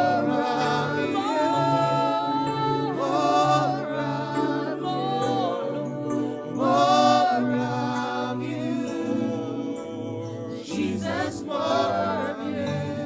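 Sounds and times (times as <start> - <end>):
held chords: 0.0 - 13.0
wordless gospel singing: 0.0 - 13.0.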